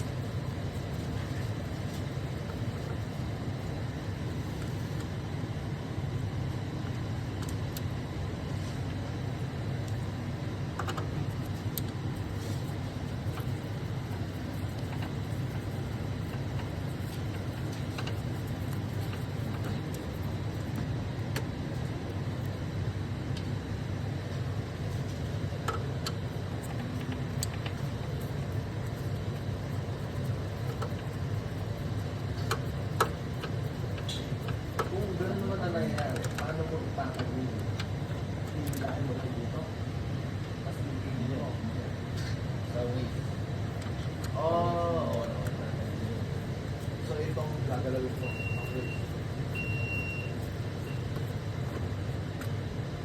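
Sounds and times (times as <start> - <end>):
faint clicks and taps: 10.7 - 22.6, 25.0 - 39.0, 50.4 - 52.6.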